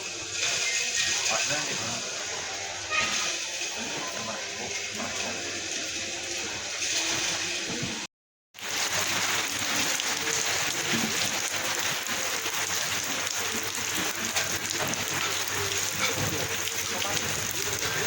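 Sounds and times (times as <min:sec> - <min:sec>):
heavy rain on hard surfaces: 0:08.6 - 0:18.0.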